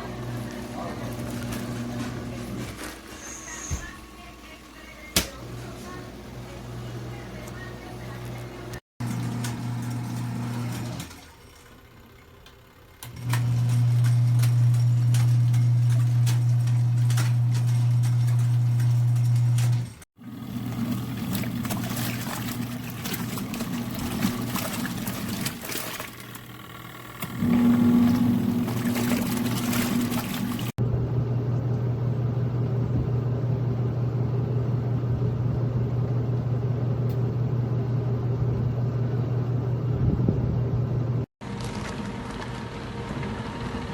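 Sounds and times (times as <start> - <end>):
water churning: 20.2 - 26.6, 27.3 - 30.8
electric motor humming: 26.5 - 30.7.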